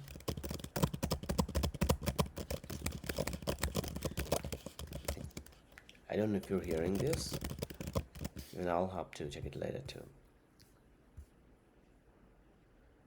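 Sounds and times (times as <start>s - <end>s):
rapid laptop keyboard typing: 0.0s - 8.6s.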